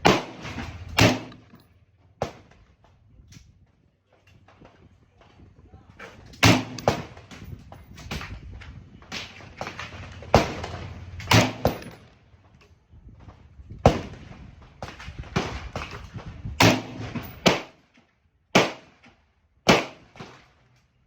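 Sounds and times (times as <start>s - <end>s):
pistol gunshots with echo: 0.0s - 1.5s, 6.4s - 7.2s, 10.3s - 12.0s, 16.6s - 17.8s, 18.5s - 18.9s, 19.7s - 20.3s.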